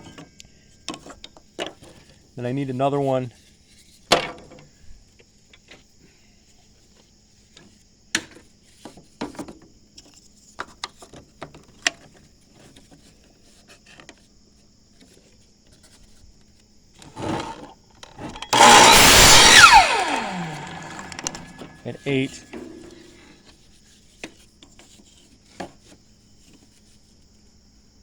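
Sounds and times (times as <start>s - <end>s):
power saw cutting wood: 18.5s - 22.6s
wood offcuts knocking: 18.6s - 21.8s.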